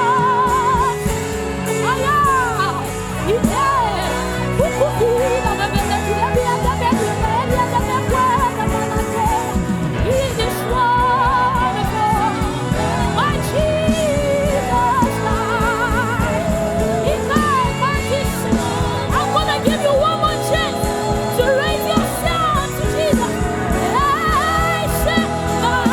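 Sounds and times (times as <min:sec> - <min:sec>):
band accompaniment: 0:00.0 - 0:25.9
person singing gospel: 0:00.0 - 0:25.9.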